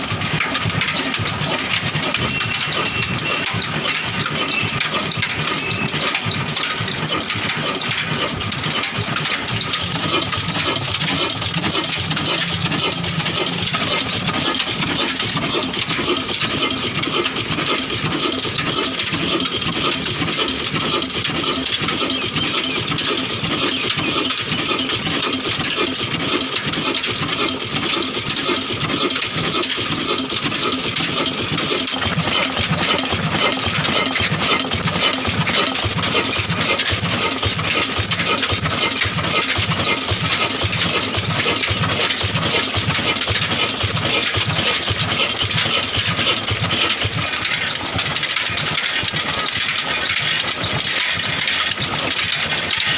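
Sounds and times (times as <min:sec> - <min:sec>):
stationary diesel engine running: 0:00.0 - 0:52.9.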